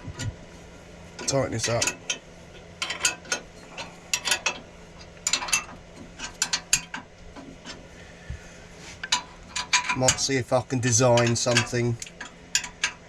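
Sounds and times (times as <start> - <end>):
spanner clicking on a nut: 1.2 - 2.2, 2.8 - 3.5, 4.1 - 7.8, 9.0 - 13.0.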